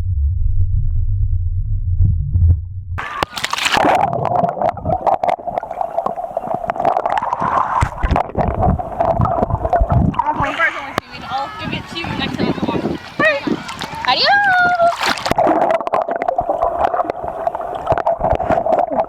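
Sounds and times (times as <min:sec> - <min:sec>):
muffled underwater rumble and gurgle: 0:00.0 - 0:11.1, 0:14.7 - 0:19.0
water splashing: 0:03.0 - 0:19.0
wind noise on microphone: 0:03.8 - 0:05.7, 0:06.4 - 0:19.0.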